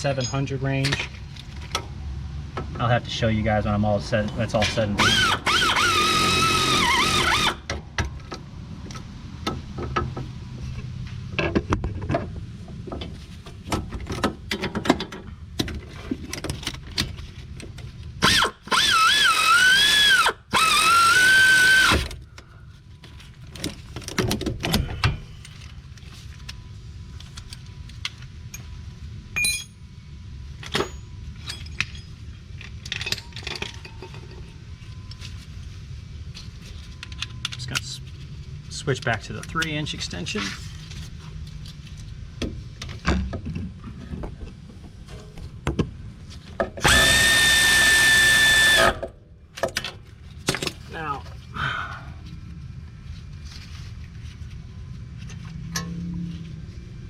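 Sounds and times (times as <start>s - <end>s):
cordless power tool whining: 5.0s - 7.6s, 18.2s - 22.1s, 46.8s - 49.0s
tools clanking on metal: 29.4s - 29.8s, 30.6s - 34.6s.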